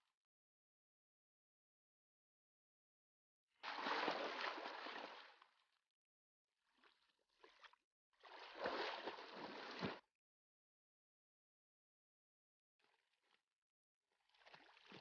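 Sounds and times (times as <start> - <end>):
water splashing from swimming: 3.6 - 5.4, 8.3 - 10.0.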